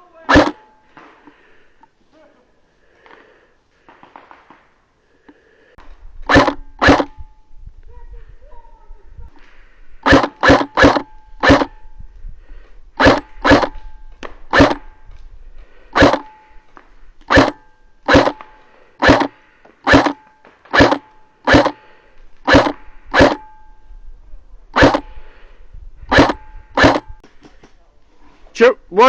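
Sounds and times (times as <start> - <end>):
airsoft rifle shots popping: 0.3 - 0.7, 6.2 - 7.3, 10.0 - 11.9, 13.0 - 15.0, 16.0 - 16.4, 17.2 - 23.6, 24.8 - 25.1, 26.1 - 27.6.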